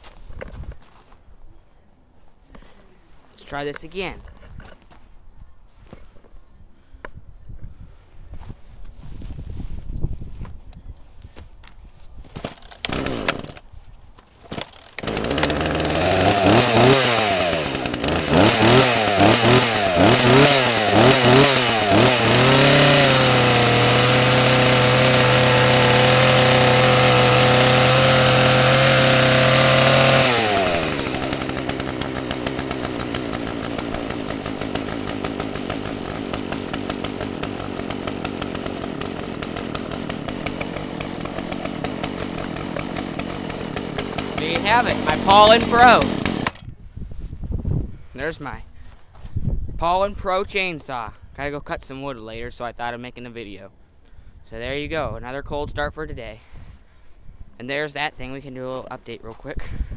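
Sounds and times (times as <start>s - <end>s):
chainsaw pull cord start: 12.4s - 13.7s, 14.5s - 46.7s
chainsaw engine revving: 12.5s - 13.6s, 14.5s - 46.6s.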